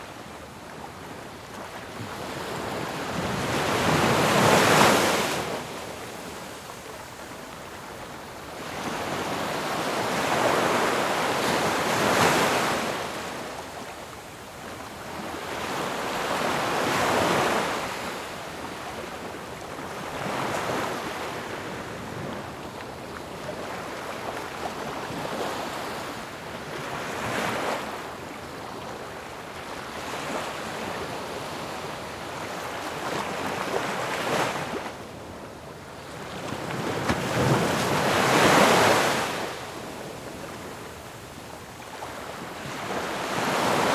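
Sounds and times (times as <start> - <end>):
ocean waves breaking: 36.1 - 40.6.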